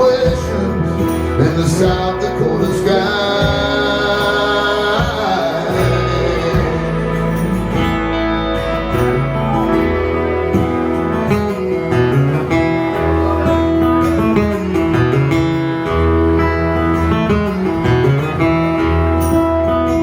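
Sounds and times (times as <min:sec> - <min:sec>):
acoustic guitar strumming: 0:00.0 - 0:20.0
sustained low notes: 0:05.8 - 0:20.0.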